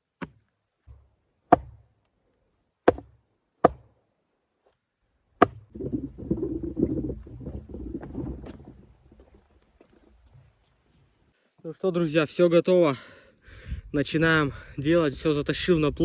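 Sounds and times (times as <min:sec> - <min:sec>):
axe chopping wood: 0:00.0 - 0:01.9, 0:02.9 - 0:04.0, 0:05.4 - 0:05.7.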